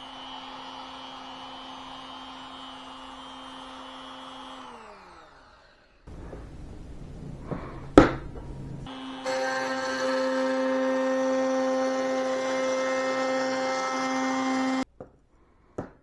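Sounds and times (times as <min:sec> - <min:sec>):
handling noises: 0:06.1 - 0:08.9
router motor whining: 0:06.1 - 0:14.8.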